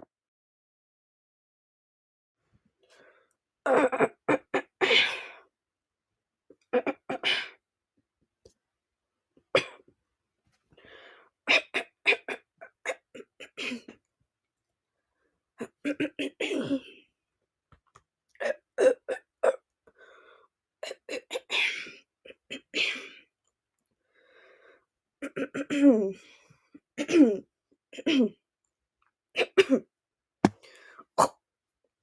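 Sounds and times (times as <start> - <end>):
girl clearing throat: 15.6 - 16.9
girl coughing: 15.9 - 16.9.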